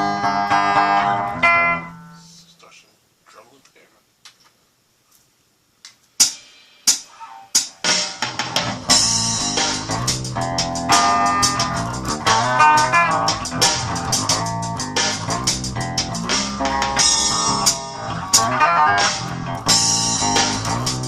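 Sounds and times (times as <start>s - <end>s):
bass guitar playing: 0.0s - 2.2s, 8.2s - 21.0s
programmed drum loop: 6.1s - 21.0s.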